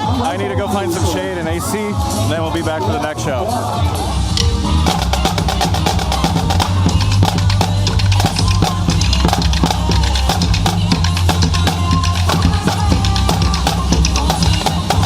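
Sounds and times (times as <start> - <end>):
continuous bass line: 0.0 - 15.0
drum kit beat: 3.8 - 15.0.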